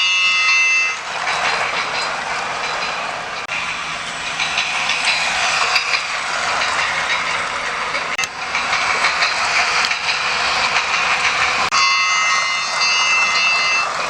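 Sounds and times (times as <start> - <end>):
toy train running on track: 0.0 - 14.0
toy train steam hiss effect: 8.9 - 14.0.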